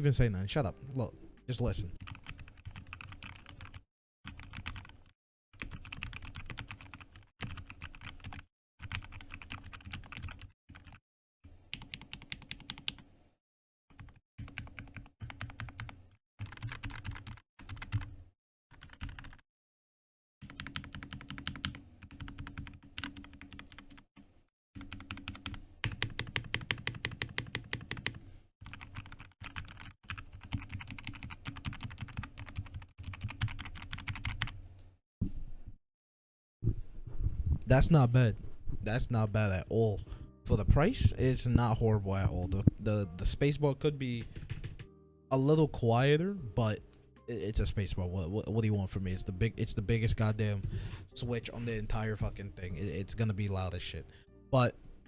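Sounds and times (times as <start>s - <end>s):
mechanical keyboard typing: 2.0s - 11.0s, 11.8s - 13.0s, 14.0s - 18.1s, 18.8s - 19.4s, 20.4s - 24.0s, 24.8s - 34.6s, 44.1s - 44.9s.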